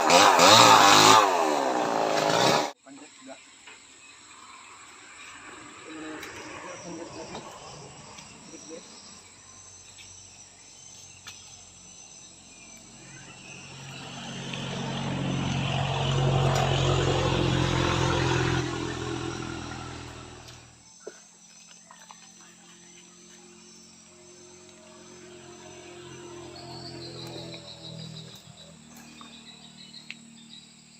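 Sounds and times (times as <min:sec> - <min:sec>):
insects chirping: 0:02.7 - 0:30.9
motor vehicle passing by: 0:04.3 - 0:10.7, 0:11.8 - 0:20.8, 0:22.3 - 0:30.9.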